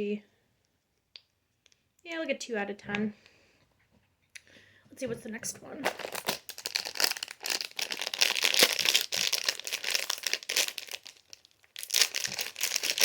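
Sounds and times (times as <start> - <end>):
toy packaging crinkling: 5.8 - 13.0.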